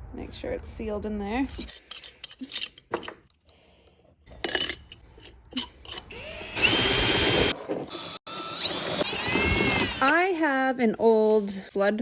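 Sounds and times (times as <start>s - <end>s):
power tool motor whining: 6.0s - 10.2s.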